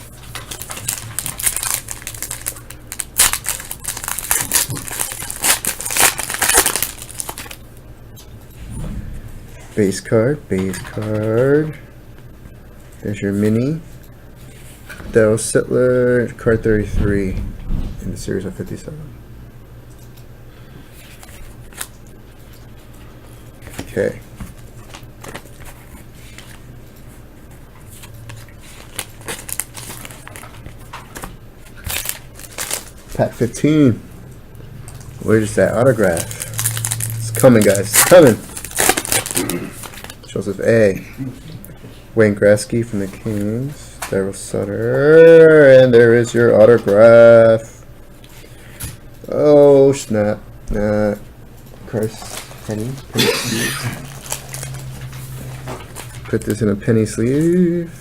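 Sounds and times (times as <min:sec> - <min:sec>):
wrapper tearing and crinkling: 0:00.3 - 0:07.6, 0:28.0 - 0:30.6, 0:31.6 - 0:33.1, 0:34.9 - 0:40.3, 0:52.0 - 0:56.2.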